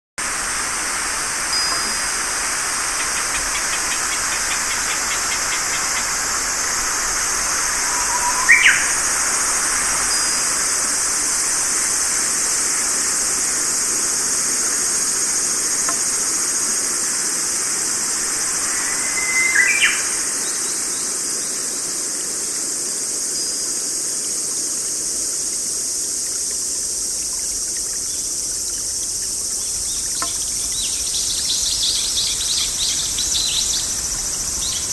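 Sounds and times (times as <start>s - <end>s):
constant hiss: 0.2s - 34.9s
high-pitched insect chorus: 0.2s - 34.9s
short bird calls: 7.2s - 10.5s.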